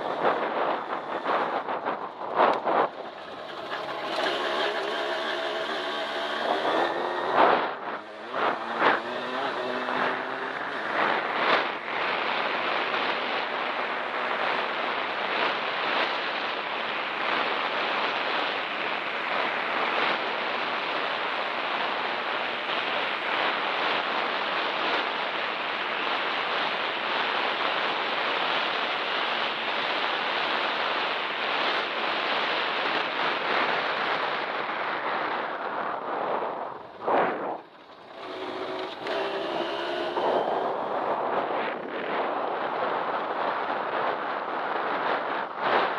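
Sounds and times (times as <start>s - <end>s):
dirt bike engine buzzing: 0.0s - 16.2s, 36.6s - 41.7s
wind rush on microphone: 0.0s - 45.9s.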